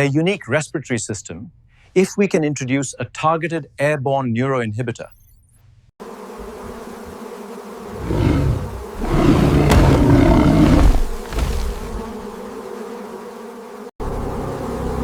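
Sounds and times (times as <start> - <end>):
bee swarm buzzing: 6.0 - 15.0
animal roar: 7.9 - 12.2.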